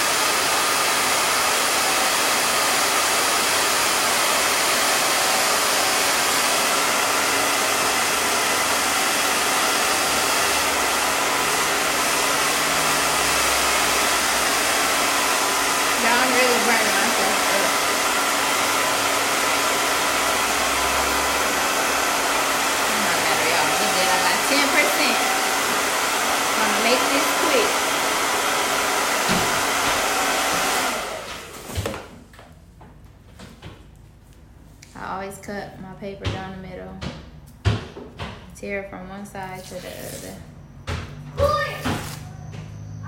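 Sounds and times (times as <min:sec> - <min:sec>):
hair dryer blowing: 0:00.0 - 0:32.3, 0:39.2 - 0:40.4, 0:41.4 - 0:42.3.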